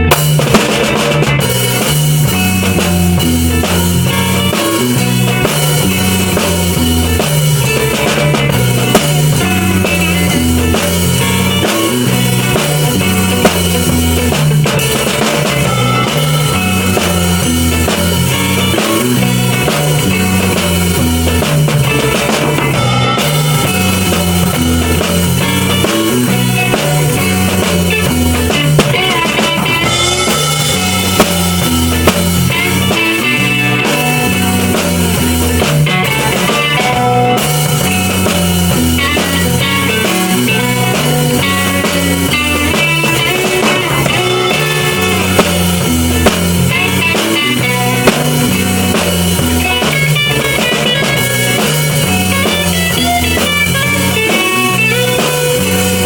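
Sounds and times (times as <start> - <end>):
drum kit: 0.0 - 56.0
guitar: 0.0 - 56.0
repeating low bass pattern: 1.4 - 21.9, 29.8 - 36.0
sharp drum hits: 22.4 - 34.3, 43.8 - 49.6.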